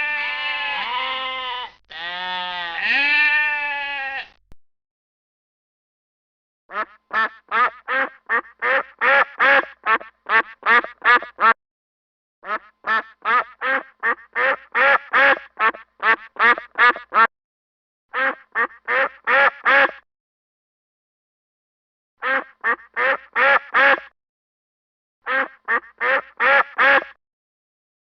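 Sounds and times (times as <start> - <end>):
duck quacking: 6.7 - 11.6, 12.4 - 17.3, 18.1 - 20.0, 22.2 - 24.1, 25.2 - 27.2.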